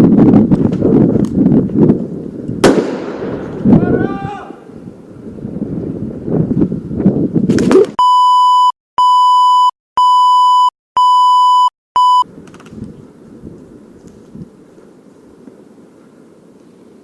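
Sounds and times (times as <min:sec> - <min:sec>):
wind rumbling on microphone: 0:00.0 - 0:08.0, 0:12.2 - 0:17.0
microphone handling noise: 0:05.8 - 0:08.0
electronic beep tone: 0:08.0 - 0:12.3.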